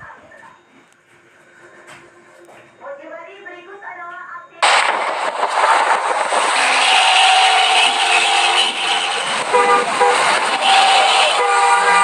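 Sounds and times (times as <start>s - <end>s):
bus engine growling exhaust: 6.4s - 12.0s.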